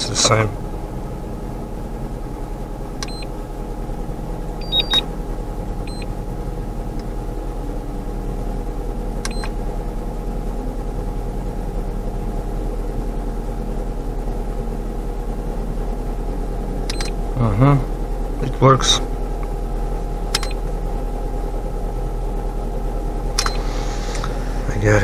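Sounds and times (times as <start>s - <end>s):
car engine idling: 0.0s - 25.0s
short high beeps: 4.6s - 5.0s.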